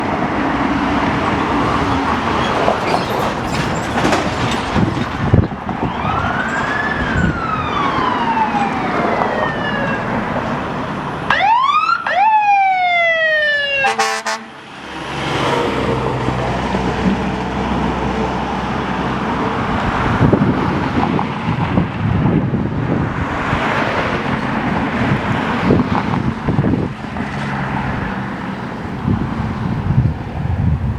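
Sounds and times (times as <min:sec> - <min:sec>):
road traffic noise: 0:00.0 - 0:30.9
fire engine siren wailing: 0:05.3 - 0:15.4
air horn blast: 0:13.8 - 0:14.6.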